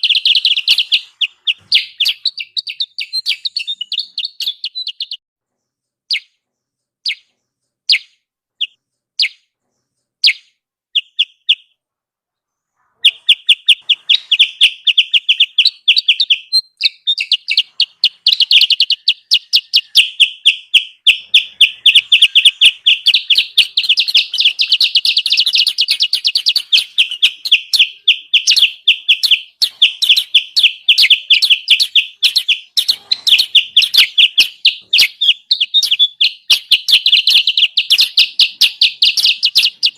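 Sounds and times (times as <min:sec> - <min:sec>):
bird lure call chirps: 0:13.1 - 0:39.9.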